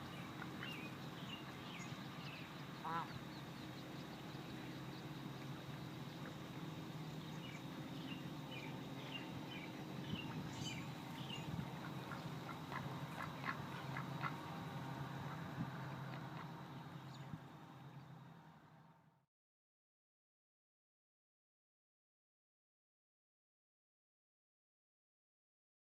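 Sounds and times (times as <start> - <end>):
ducks quacking: 2.8 - 3.2, 11.7 - 14.6.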